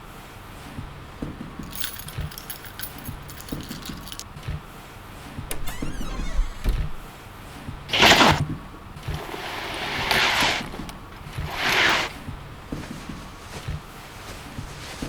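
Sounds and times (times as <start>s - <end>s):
metallic jingling: 1.6s - 4.4s
low thumps: 5.5s - 7.1s.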